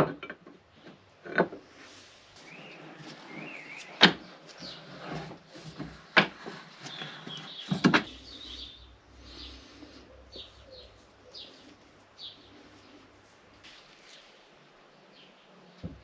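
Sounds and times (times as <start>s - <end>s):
small bird chirping: 2.4s - 5.0s, 6.6s - 13.0s.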